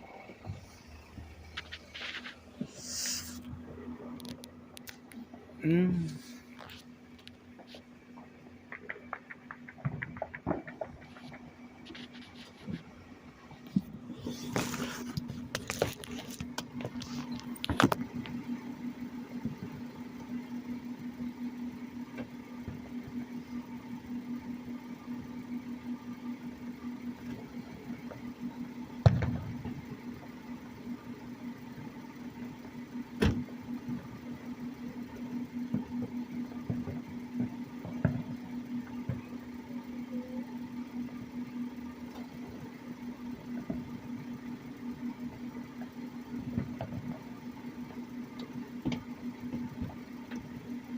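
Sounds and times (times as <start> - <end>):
steady low hum: 0.0 - 50.9
distant gunfire and fireworks bangs: 7.5 - 12.8, 28.9 - 30.1, 35.6 - 39.6.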